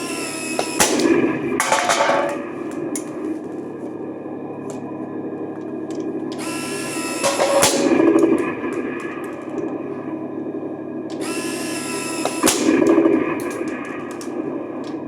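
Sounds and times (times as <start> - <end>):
small electric motors whirring: 0.0 - 1.1, 6.3 - 7.8, 11.1 - 12.8
toy gun firing crack: 0.6 - 2.5, 7.2 - 9.7, 11.1 - 15.0.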